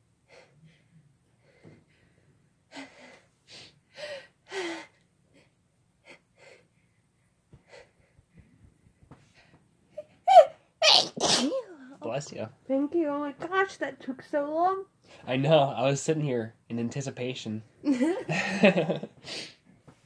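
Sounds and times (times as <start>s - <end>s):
person sniffing: 19.2s - 19.6s.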